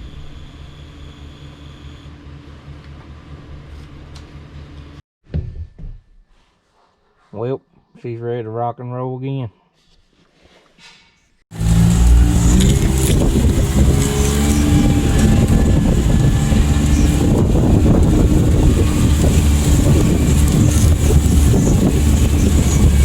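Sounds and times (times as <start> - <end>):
road and wind rumble: 11.5 - 23.0
vehicle engine running: 11.5 - 23.0.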